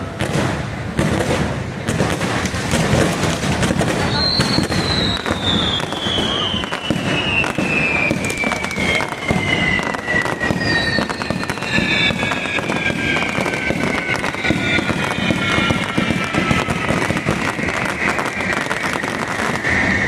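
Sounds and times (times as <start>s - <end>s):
fireworks crackling and popping: 0.0s - 20.0s
firework whistles sliding down: 2.3s - 20.0s.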